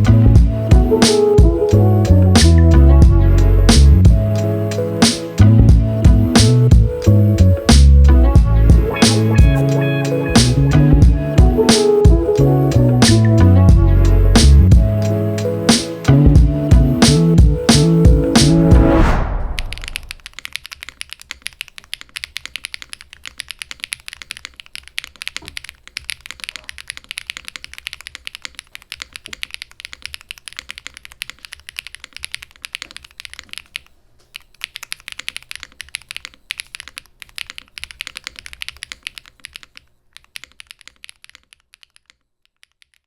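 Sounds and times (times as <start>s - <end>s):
typing on mechanical keyboard: 20.0s - 43.0s.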